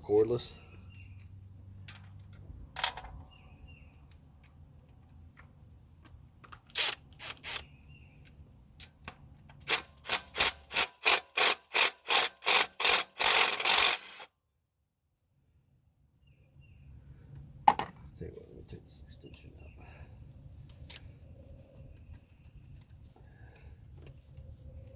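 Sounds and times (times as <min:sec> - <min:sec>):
cordless power tool bursts: 0:06.7 - 0:07.7, 0:09.6 - 0:14.3.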